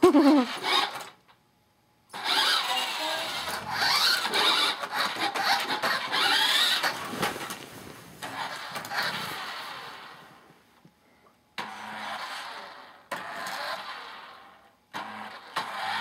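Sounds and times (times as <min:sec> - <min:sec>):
toy car electric motor whining: 0:00.5 - 0:01.2, 0:02.1 - 0:07.0, 0:08.2 - 0:10.2, 0:11.6 - 0:16.0.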